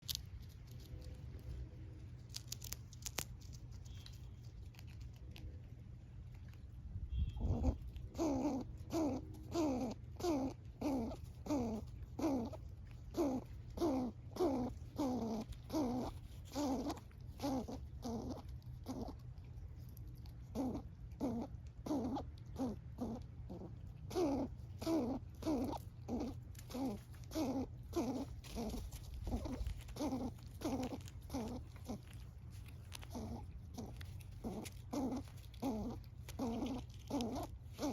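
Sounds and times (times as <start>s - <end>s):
squirrel calling: 7.2s - 19.2s, 20.5s - 37.9s.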